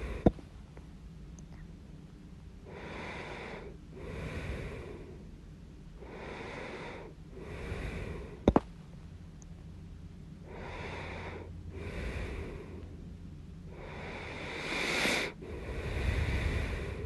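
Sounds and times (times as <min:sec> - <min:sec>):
person breathing: 0:00.0 - 0:00.4, 0:02.6 - 0:05.3, 0:06.0 - 0:08.7, 0:10.4 - 0:13.0, 0:13.7 - 0:17.0.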